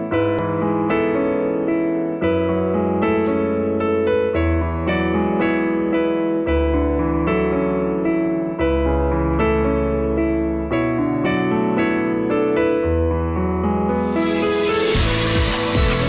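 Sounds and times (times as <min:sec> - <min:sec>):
gentle piano tune: 0:00.0 - 0:16.0
bass line: 0:14.9 - 0:16.0.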